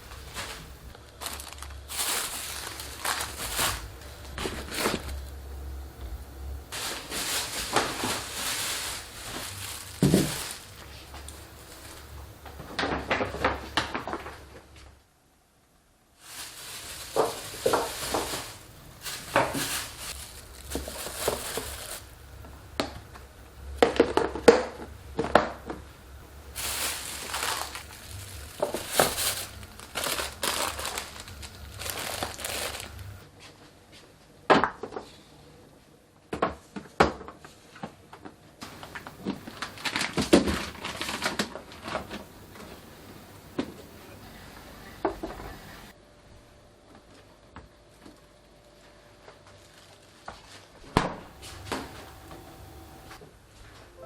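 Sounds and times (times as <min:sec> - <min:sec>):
plastic wrapping crinkling: 0:00.0 - 0:05.4, 0:06.7 - 0:14.6, 0:16.2 - 0:22.9, 0:26.1 - 0:33.2, 0:38.6 - 0:43.0, 0:48.9 - 0:53.2
kitchen items knocking: 0:06.8 - 0:10.8, 0:16.6 - 0:22.0.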